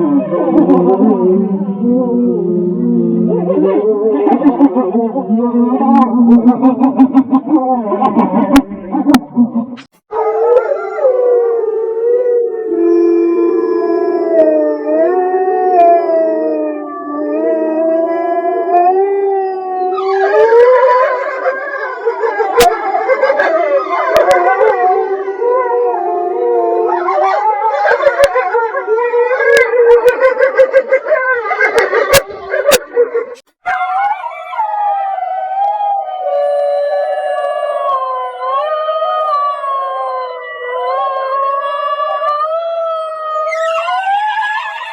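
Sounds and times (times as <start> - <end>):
wolves howling: 10.1 - 44.9.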